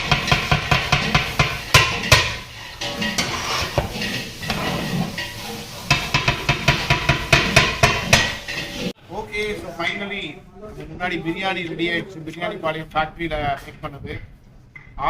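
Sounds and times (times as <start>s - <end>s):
metal on metal knocks: 0.0s - 5.3s, 5.9s - 8.9s
ladle scraping metal pot: 0.0s - 9.0s.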